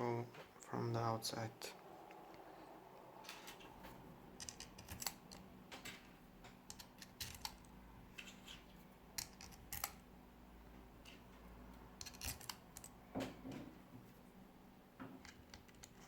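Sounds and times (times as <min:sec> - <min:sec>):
small screws and plastic parts clicking: 0:04.4 - 0:08.6, 0:09.2 - 0:10.0, 0:12.0 - 0:13.0, 0:15.2 - 0:16.0.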